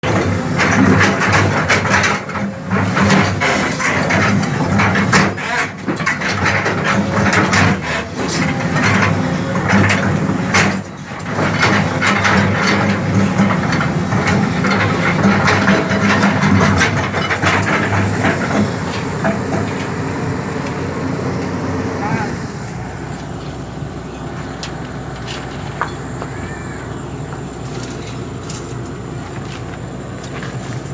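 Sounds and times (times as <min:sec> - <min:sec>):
metallic clanks and knocks: 0:00.0 - 0:20.8
bulldozer diesel engine running: 0:00.0 - 0:30.9.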